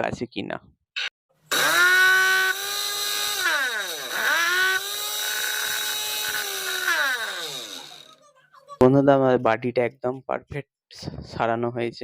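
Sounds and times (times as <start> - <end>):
mixer grinder motor running: 1.5 - 8.2.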